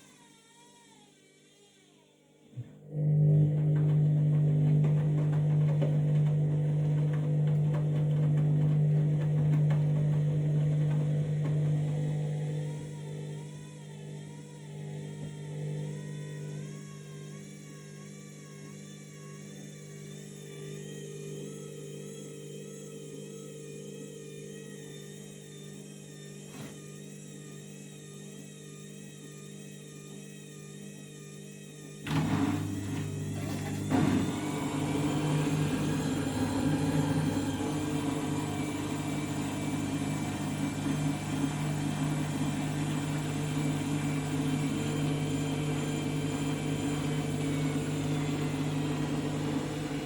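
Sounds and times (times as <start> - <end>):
washing machine motor hum: 2.5 - 50.0
washing machine knocking and rattling: 3.4 - 12.1.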